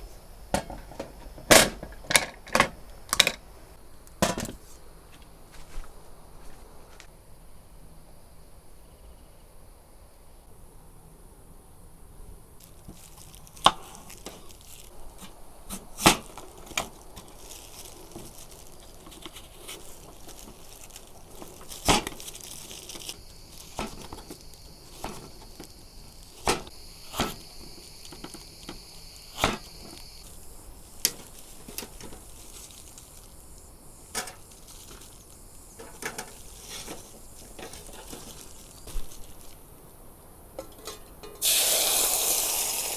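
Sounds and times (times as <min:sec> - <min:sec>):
high-pitched insect hiss: 0:12.6 - 0:39.9, 0:41.1 - 0:42.9.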